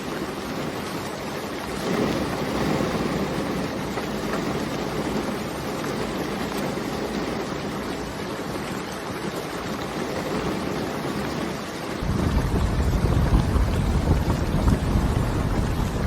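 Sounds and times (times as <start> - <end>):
steady rain: 0.0 - 16.0
deep rumble: 12.0 - 16.0.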